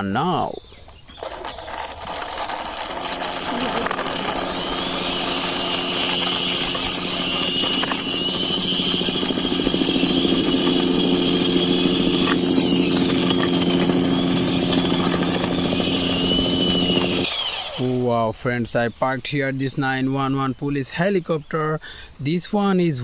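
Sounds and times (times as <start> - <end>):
buzzing toy engine drone: 1.2 - 18.1
high wavering electronic tone: 2.9 - 18.0.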